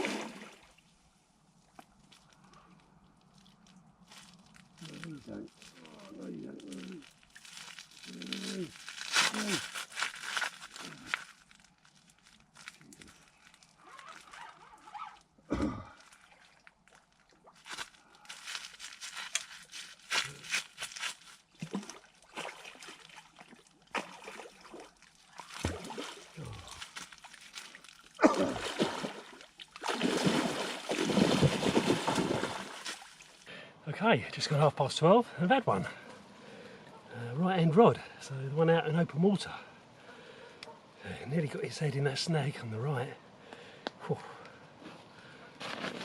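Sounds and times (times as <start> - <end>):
water splashing and sloshing: 0.0 - 0.9, 16.0 - 33.5.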